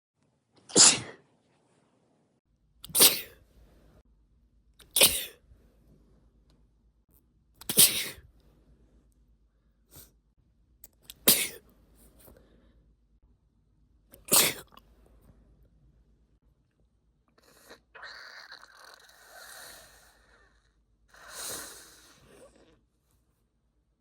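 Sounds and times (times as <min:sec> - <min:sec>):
woman sneezing: 0:00.7 - 0:01.2, 0:02.9 - 0:03.4, 0:04.9 - 0:05.4, 0:07.6 - 0:08.2, 0:11.2 - 0:11.6, 0:14.3 - 0:14.7.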